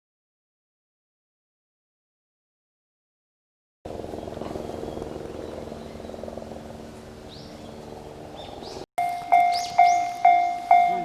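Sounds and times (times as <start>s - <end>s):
low pulsing hum: 3.9s - 8.8s
level crossing warning bell: 9.0s - 11.0s.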